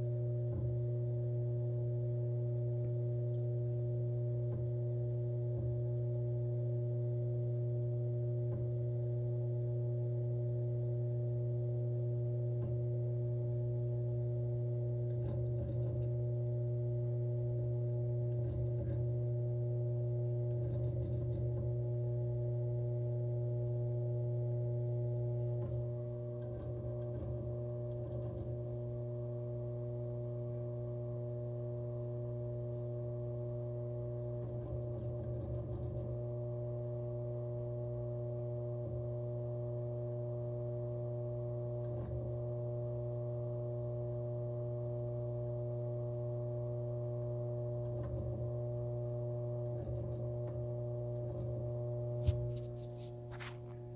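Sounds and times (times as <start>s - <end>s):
hard drive droning: 0.0s - 53.9s
hard drive ticks: 17.6s - 19.3s, 20.3s - 21.9s, 25.6s - 28.9s, 34.3s - 36.3s, 49.5s - 52.4s.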